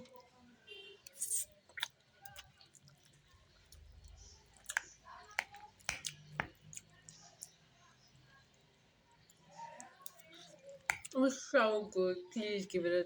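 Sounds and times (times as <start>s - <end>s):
quiet chewing: 1.0s - 11.2s
utensil clicking and tapping: 4.0s - 6.8s, 9.3s - 11.2s.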